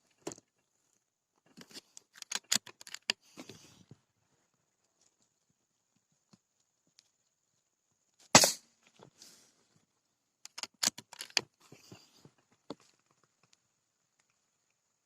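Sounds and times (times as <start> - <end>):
small clicks and rustles: 0.0 - 8.0, 8.8 - 15.0
air rifle shot: 8.3 - 8.6.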